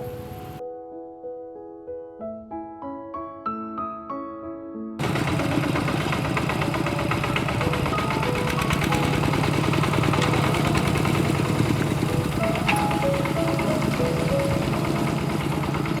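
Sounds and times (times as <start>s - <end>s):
soft piano music: 0.0s - 16.0s
loud motor humming: 5.0s - 16.0s.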